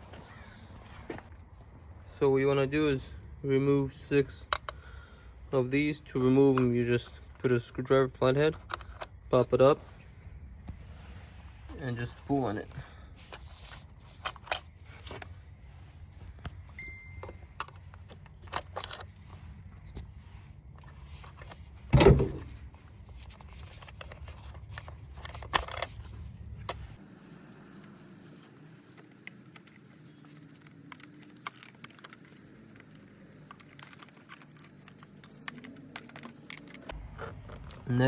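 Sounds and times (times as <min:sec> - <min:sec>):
plastic clips clicking and rattling: 0:08.4 - 0:09.2, 0:23.2 - 0:26.0, 0:29.2 - 0:37.8.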